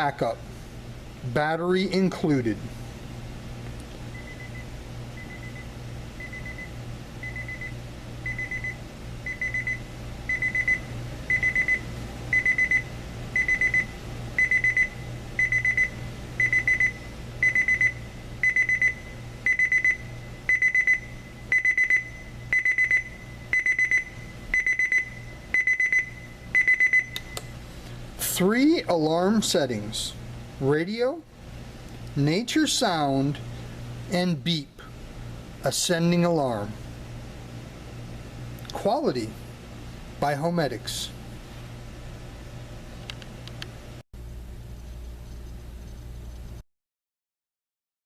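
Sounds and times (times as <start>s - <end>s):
electronic alarm beeps: 4.1s - 4.6s, 5.2s - 27.4s.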